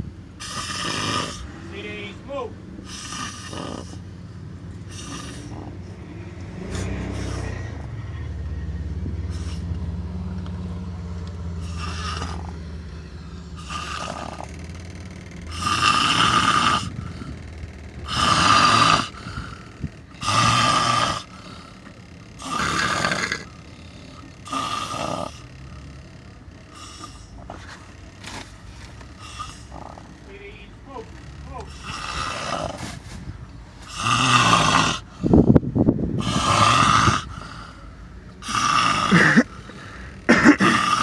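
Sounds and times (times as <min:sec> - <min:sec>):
person snoring: 0:00.4 - 0:01.8, 0:02.8 - 0:04.0, 0:04.9 - 0:05.9, 0:11.6 - 0:12.7, 0:13.3 - 0:14.6, 0:15.5 - 0:17.4, 0:18.0 - 0:25.5, 0:26.7 - 0:27.8, 0:29.1 - 0:30.2, 0:30.9 - 0:33.0, 0:33.8 - 0:35.4, 0:36.2 - 0:41.0.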